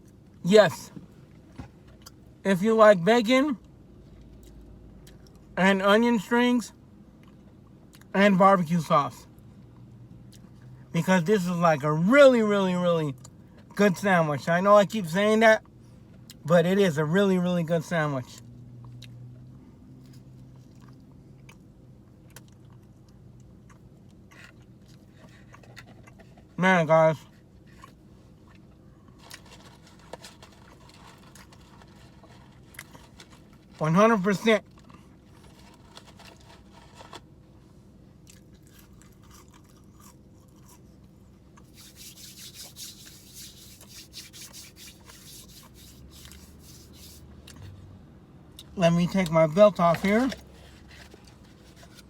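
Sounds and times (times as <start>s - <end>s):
steady low hum: 0.0s - 52.0s
chewing burger: 20.0s - 26.6s, 27.2s - 33.8s, 34.6s - 37.4s, 38.1s - 47.7s
faint rustling and rubbing: 41.6s - 47.3s, 49.8s - 52.0s.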